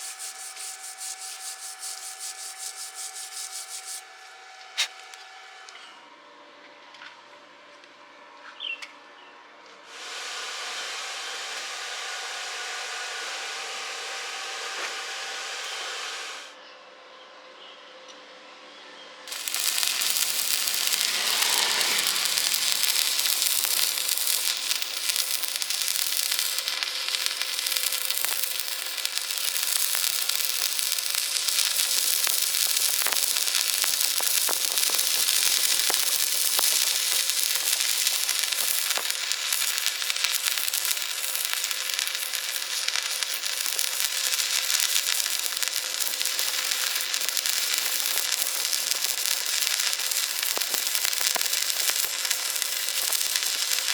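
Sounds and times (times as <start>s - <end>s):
welding arc crackling sizzle: 0.0s - 4.1s, 9.9s - 16.5s, 19.3s - 53.9s
steady whirring noise: 0.0s - 8.4s.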